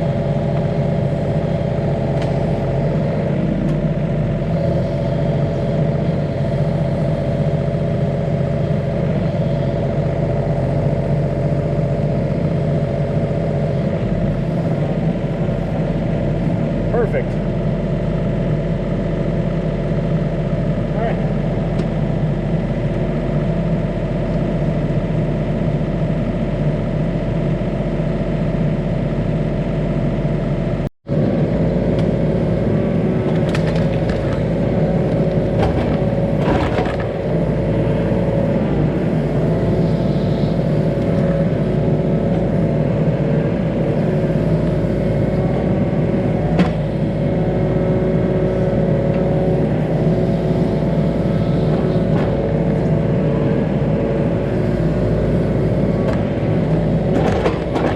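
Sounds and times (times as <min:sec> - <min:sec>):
excavator diesel engine running: 0:00.0 - 0:57.9
sharp cracks and knocks: 0:33.3 - 0:34.4.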